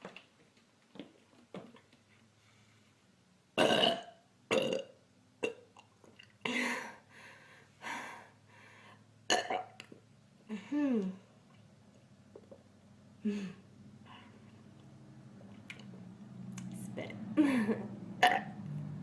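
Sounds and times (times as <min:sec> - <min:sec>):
woman burping: 0:03.6 - 0:05.6, 0:09.3 - 0:09.7, 0:17.4 - 0:18.5.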